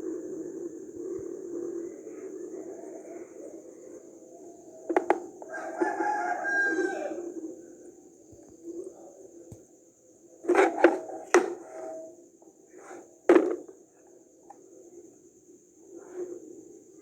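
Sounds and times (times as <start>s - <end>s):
hard objects knocking and clicking: 4.9s - 5.3s, 10.5s - 11.7s, 12.8s - 13.8s.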